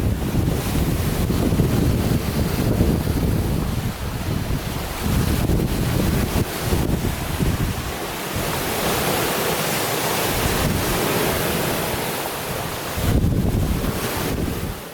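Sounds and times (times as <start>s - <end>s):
waves breaking on a lake: 0.0s - 14.9s
wind buffeting microphone: 0.0s - 14.9s.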